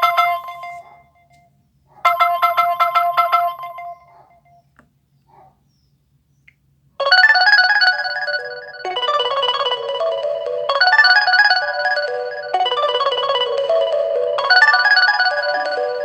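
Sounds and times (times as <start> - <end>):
phone ringtone melody: 2.2 - 4.0, 7.0 - 16.0.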